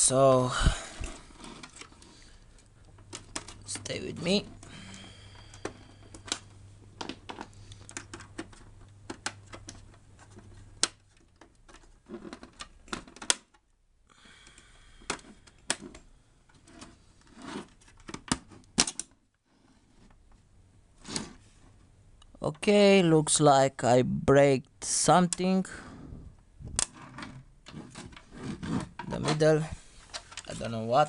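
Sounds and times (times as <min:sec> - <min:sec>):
plastic parts clicking and tapping: 0:01.0 - 0:03.9, 0:05.3 - 0:13.7, 0:14.4 - 0:17.0, 0:17.6 - 0:19.2, 0:30.1 - 0:30.6.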